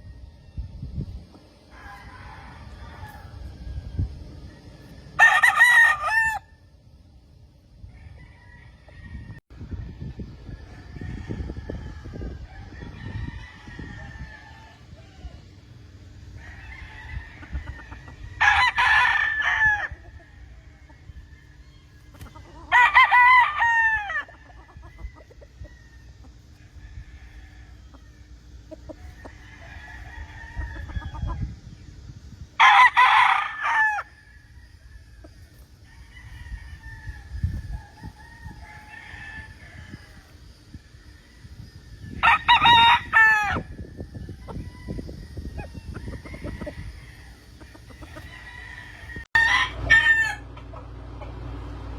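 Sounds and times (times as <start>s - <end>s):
roosters crowing: 0.0s - 51.9s.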